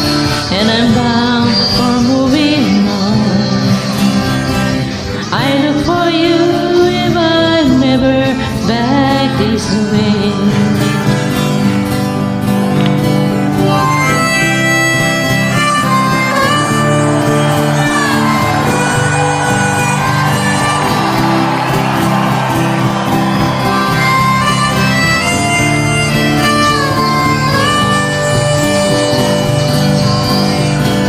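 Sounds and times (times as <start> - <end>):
harmonica solo: 0.0 - 1.8, 13.0 - 31.0
strummed acoustic guitar: 0.0 - 31.0.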